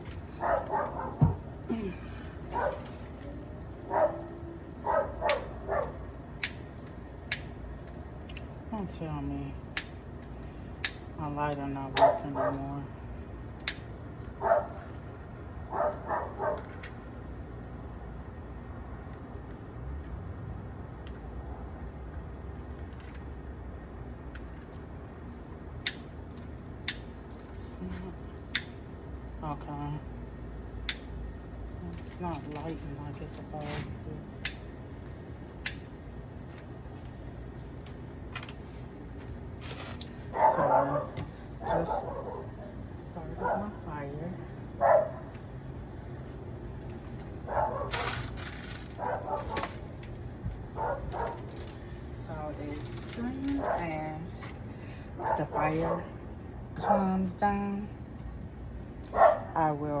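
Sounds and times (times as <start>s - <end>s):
steady low hum: 0.0s - 60.0s
dogs barking: 0.3s - 1.5s, 2.5s - 3.0s, 3.8s - 6.2s, 11.9s - 12.8s, 14.3s - 14.9s, 15.6s - 16.8s, 40.3s - 43.9s, 44.8s - 45.3s, 47.4s - 48.2s, 49.0s - 49.8s, 50.7s - 51.5s, 53.6s - 54.0s, 55.2s - 56.2s, 59.1s - 59.6s.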